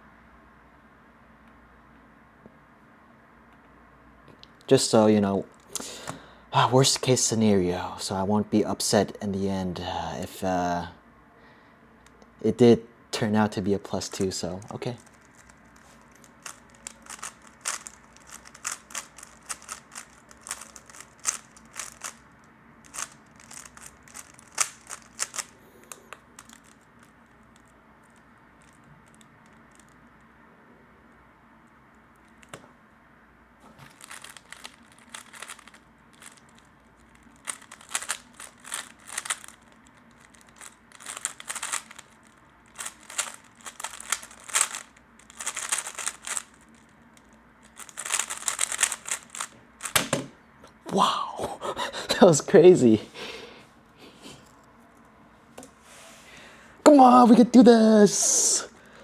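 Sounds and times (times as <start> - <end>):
puzzle cube plastic clicks: 5.5 - 6.2, 13.9 - 30.3, 33.8 - 50.3.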